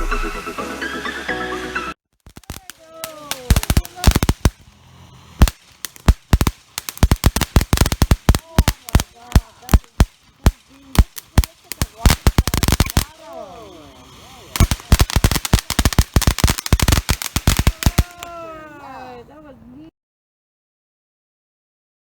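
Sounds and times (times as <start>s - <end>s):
fireworks bangs and crackles: 2.2s - 19.0s.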